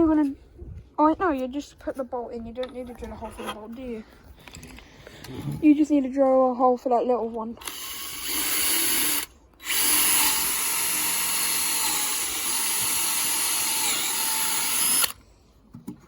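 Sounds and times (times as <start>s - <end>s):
electric drill drilling: 7.6s - 15.2s.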